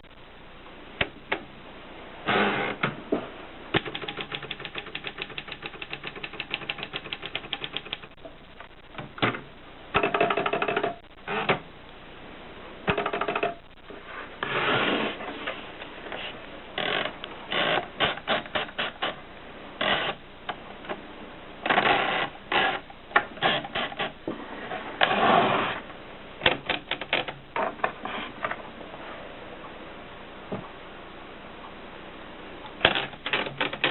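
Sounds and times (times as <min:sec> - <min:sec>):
typewriter keys clicking: 0:03.8 - 0:08.1.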